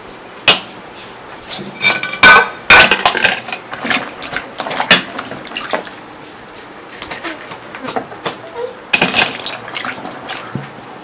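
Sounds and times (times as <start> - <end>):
metal utensils clanking: 1.8 - 3.6.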